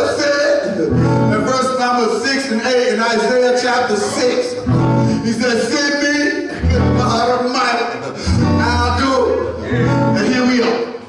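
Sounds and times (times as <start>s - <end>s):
person singing: 2.6s - 7.6s, 8.2s - 10.8s
low bass line: 6.6s - 7.4s, 8.3s - 10.3s.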